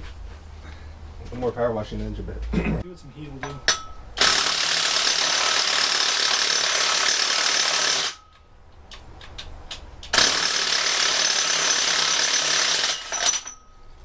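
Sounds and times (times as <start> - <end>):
impact wrench hammering: 3.4 - 8.5, 10.0 - 13.8.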